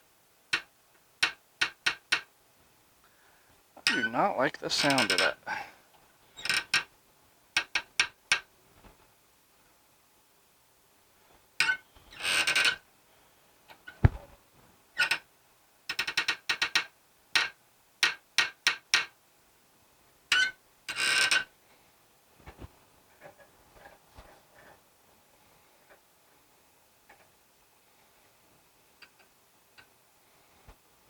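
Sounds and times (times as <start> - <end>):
dull thump: 14.0 - 14.4.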